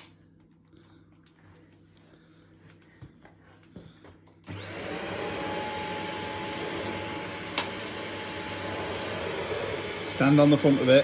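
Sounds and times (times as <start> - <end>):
vacuum cleaner motor whining: 4.4 - 11.0.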